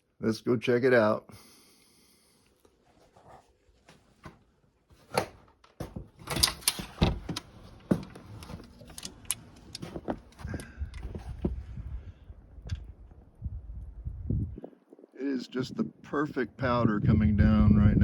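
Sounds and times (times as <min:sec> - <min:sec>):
door latch and handle clicking: 0:06.2 - 0:10.1
wind rumble on microphone: 0:10.2 - 0:18.0.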